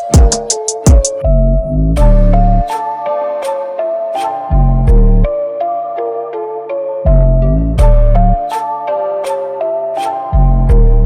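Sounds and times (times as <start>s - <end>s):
sharp percussion hits: 0.0s - 1.2s
held synth notes: 0.0s - 11.0s
deep bass: 1.2s - 2.7s, 4.6s - 5.4s, 7.1s - 8.4s, 10.4s - 11.0s.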